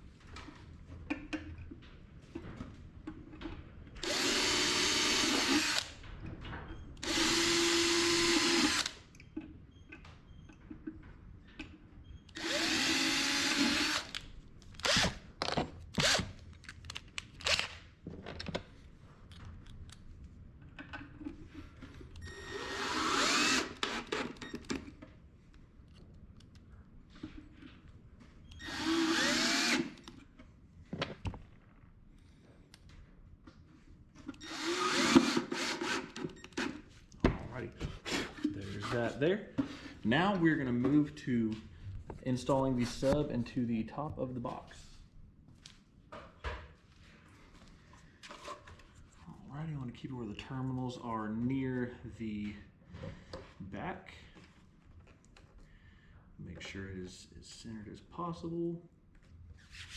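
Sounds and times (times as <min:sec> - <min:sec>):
power drill driving screws: 0:04.0 - 0:05.9, 0:07.0 - 0:09.0, 0:12.4 - 0:14.2, 0:14.8 - 0:15.2, 0:16.0 - 0:16.3, 0:22.2 - 0:24.5, 0:28.6 - 0:30.0, 0:34.4 - 0:36.8.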